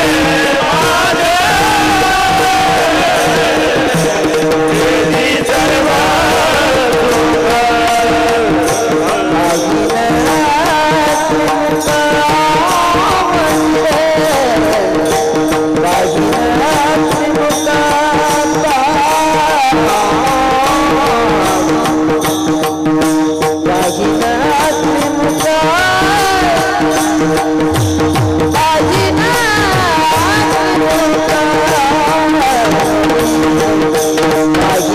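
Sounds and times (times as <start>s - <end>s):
man singing devotional song: 0.0s - 34.9s
hand drum strokes: 20.0s - 34.9s.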